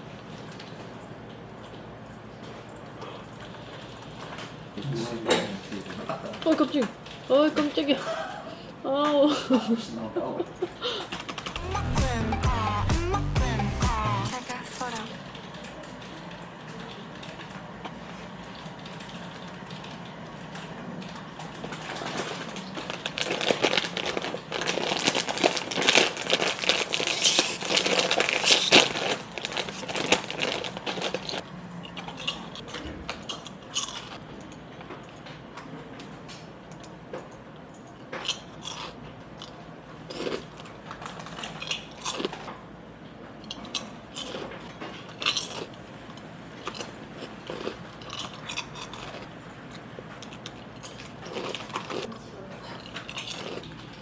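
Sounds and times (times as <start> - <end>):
crunchy food being chewed: 21.1 - 34.2, 38.0 - 42.6, 43.4 - 54.0.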